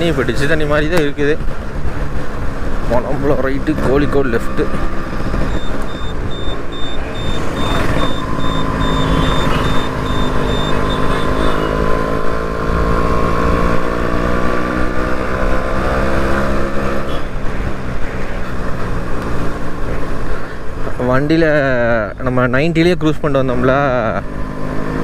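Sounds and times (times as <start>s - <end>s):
thin high beeping: 5.4s - 11.7s.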